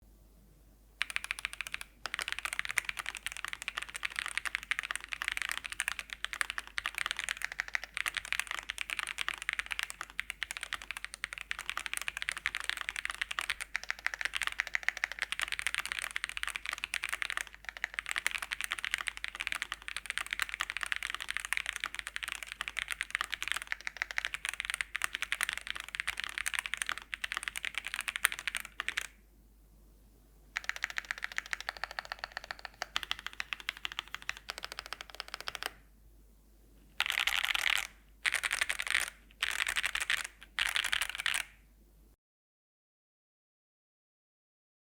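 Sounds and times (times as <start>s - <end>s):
mechanical keyboard typing: 1.0s - 29.2s, 30.6s - 35.8s, 37.0s - 41.6s.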